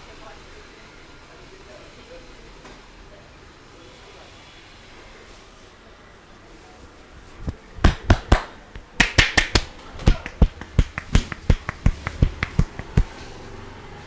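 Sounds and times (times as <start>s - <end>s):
hand slaps and taps on head: 7.4s - 13.2s.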